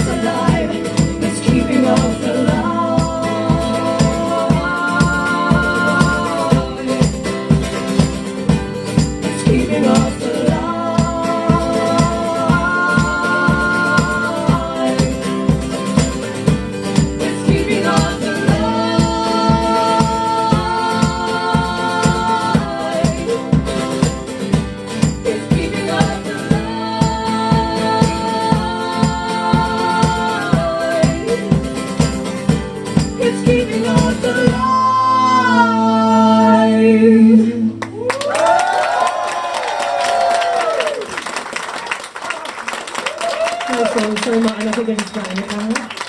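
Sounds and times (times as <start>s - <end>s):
person singing: 0.0s - 7.7s, 9.2s - 16.3s, 16.9s - 24.4s, 25.0s - 32.2s, 33.0s - 37.8s
acoustic folk band playing: 0.0s - 38.5s, 42.7s - 46.0s.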